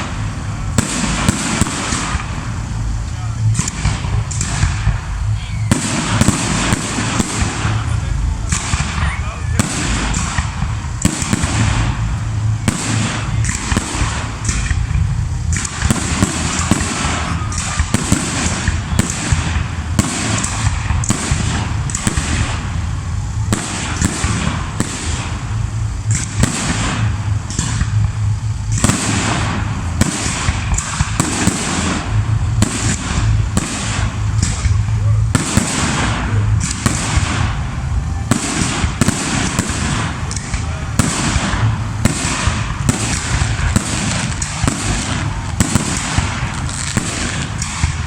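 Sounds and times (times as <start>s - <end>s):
fireworks bangs and crackling: 0.0s - 48.0s.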